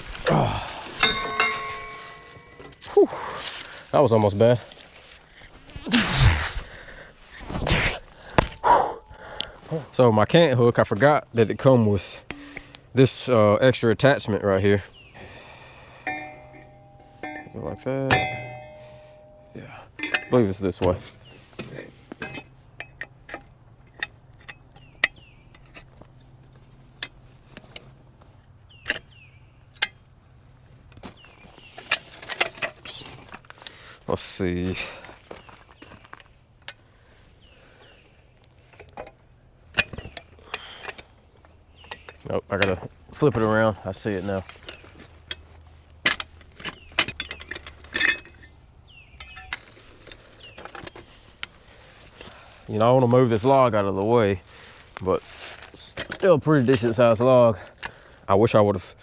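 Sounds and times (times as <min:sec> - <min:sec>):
metal parts clicking and clinking: 0:00.0 - 0:02.9, 0:16.0 - 0:27.3, 0:44.4 - 0:51.5
faint low hum: 0:15.3 - 0:21.0.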